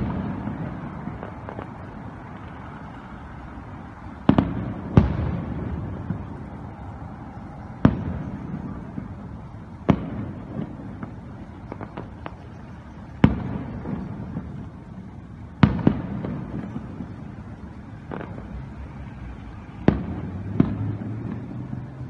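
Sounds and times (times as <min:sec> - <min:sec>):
crackling pops: 0:00.0 - 0:02.8, 0:18.0 - 0:18.6
fireworks booming: 0:00.0 - 0:22.0.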